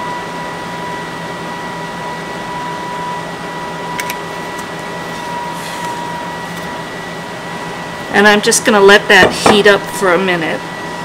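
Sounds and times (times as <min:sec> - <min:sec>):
fan whirring with high whine: 0:00.0 - 0:11.0.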